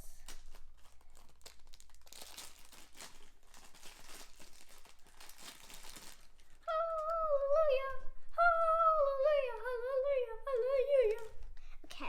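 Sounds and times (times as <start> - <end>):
packaging crinkling and tearing: 0.1 - 7.2, 11.0 - 11.5.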